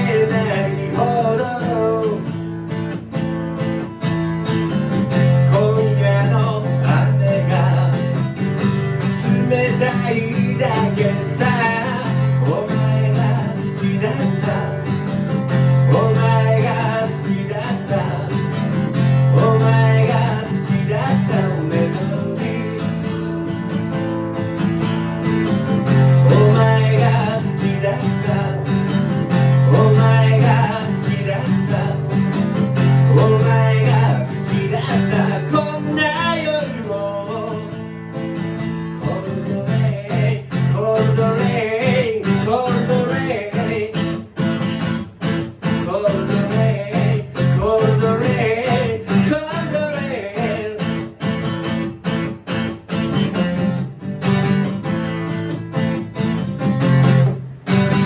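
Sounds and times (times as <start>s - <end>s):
person singing: 0.0s - 2.4s, 5.4s - 8.4s, 9.0s - 23.3s, 25.9s - 37.9s, 38.9s - 44.3s, 45.8s - 51.2s
acoustic guitar strumming: 0.0s - 58.0s.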